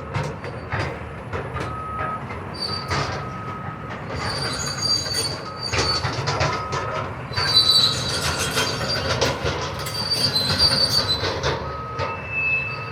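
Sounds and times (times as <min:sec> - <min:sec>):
high metallic squeals: 0:04.2 - 0:06.1, 0:07.3 - 0:12.9.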